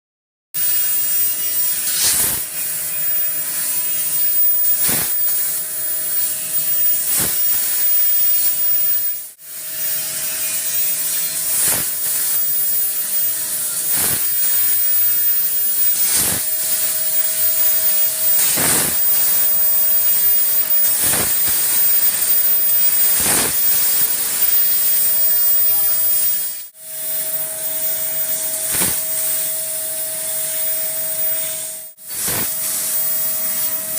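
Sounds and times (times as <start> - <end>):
short sharp bursts: 0.6 - 2.7, 3.4 - 5.6, 11.4 - 12.5, 13.8 - 26.7, 32.0 - 33.1
laser cutter gas jet hiss: 0.6 - 33.9.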